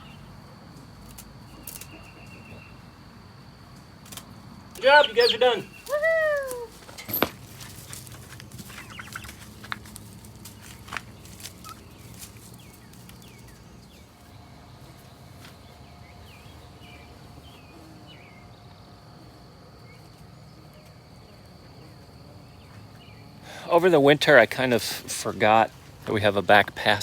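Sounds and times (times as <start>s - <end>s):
young turkeys peeping: 4.8s - 17.8s.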